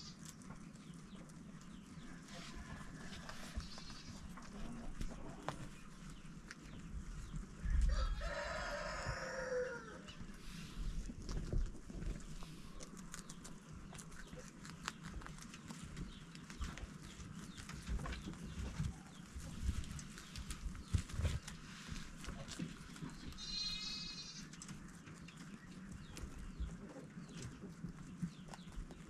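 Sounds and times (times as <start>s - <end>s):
farm animal call: 0.0s - 5.8s, 7.5s - 10.9s, 22.4s - 27.8s.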